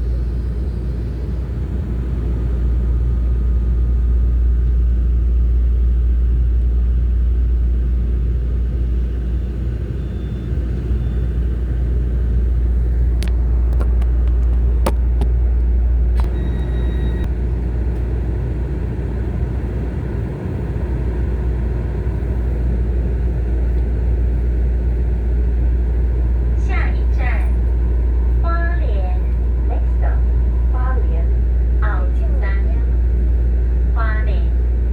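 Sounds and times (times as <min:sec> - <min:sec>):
electric train rumble on board: 0:00.0 - 0:34.9
high beep: 0:16.2 - 0:17.3.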